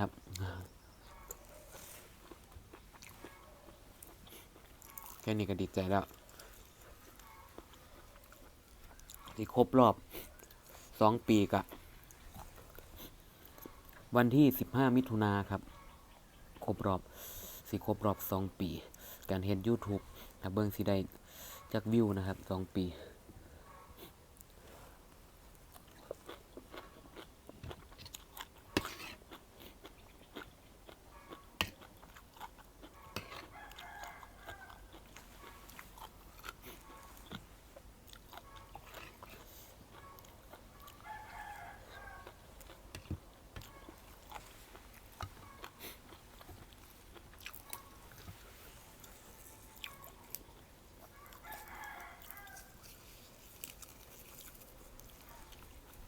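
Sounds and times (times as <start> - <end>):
chewing and crunching food: 0.0 - 56.0
rooster crowing: 33.2 - 35.0, 40.8 - 42.4, 51.1 - 52.8.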